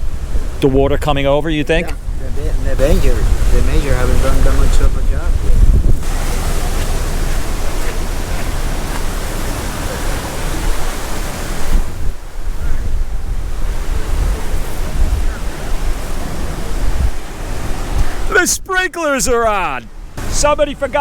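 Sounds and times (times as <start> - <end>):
wind buffeting microphone: 0.0 - 18.7
rushing hiss of rain: 1.5 - 18.5, 19.9 - 21.0.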